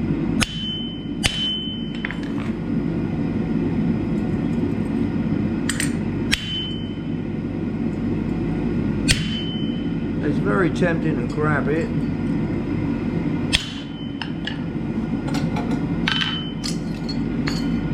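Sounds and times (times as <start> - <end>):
steady low rumble: 0.0 - 17.9
hammer striking chisel on metal: 0.4 - 2.3, 5.7 - 6.9, 9.1 - 9.7, 13.5 - 14.6.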